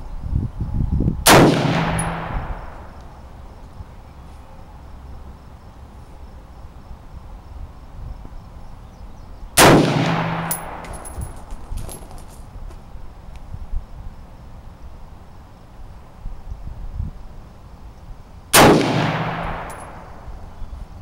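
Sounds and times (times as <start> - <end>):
gunshots echoing: 1.3 - 2.9, 9.6 - 11.1, 18.6 - 20.2
light metallic clinks: 10.4 - 12.5, 19.5 - 20.2.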